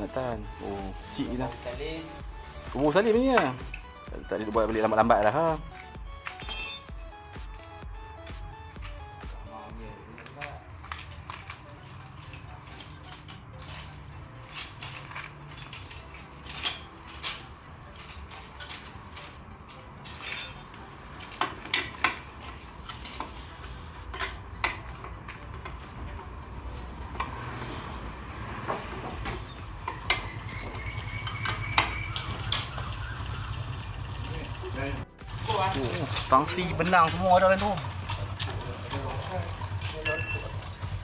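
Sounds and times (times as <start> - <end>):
metallic tool clinks and knocks: 5.8 - 7.9, 10.2 - 23.4, 35.4 - 41.0.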